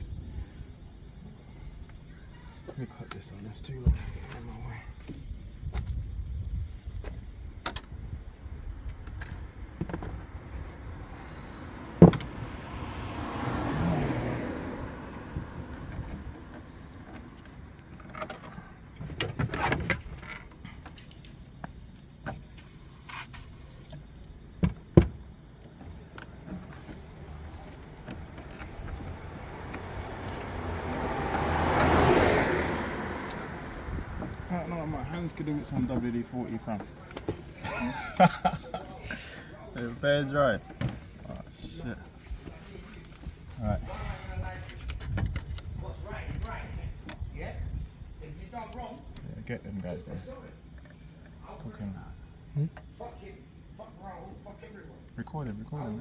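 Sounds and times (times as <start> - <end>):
passing vehicle: 9.4 - 20.8, 25.2 - 48.4.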